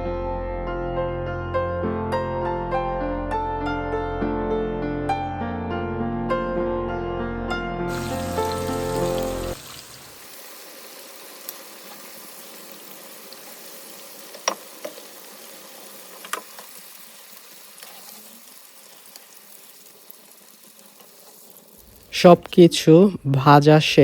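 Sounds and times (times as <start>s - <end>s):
food sizzling in hot oil: 7.9s - 22.9s.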